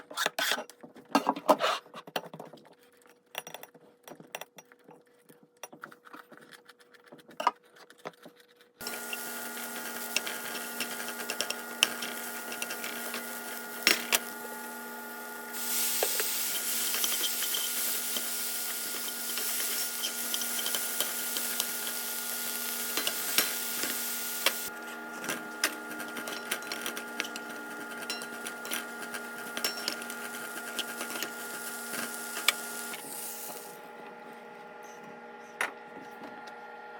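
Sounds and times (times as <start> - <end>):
food sizzling: 8.8 - 33.8
steady electrical hum: 8.8 - 36.1
spatula scraping and tapping pan: 8.9 - 14.3, 15.6 - 22.0, 25.2 - 32.6.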